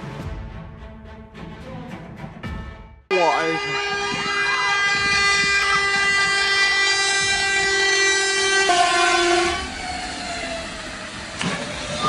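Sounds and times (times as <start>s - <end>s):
train horn: 3.1s - 10.0s
train rolling by: 3.6s - 12.0s.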